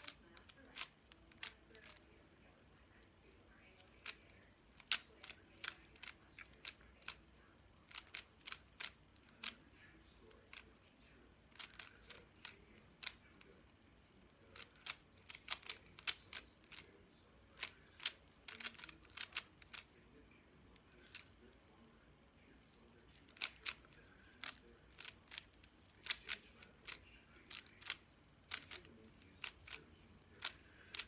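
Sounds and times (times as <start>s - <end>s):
puzzle cube turning clicks: 0.0s - 2.1s, 3.8s - 7.2s, 7.8s - 9.6s, 11.5s - 13.5s, 14.3s - 16.9s, 17.5s - 19.9s, 21.0s - 21.3s, 23.2s - 31.0s.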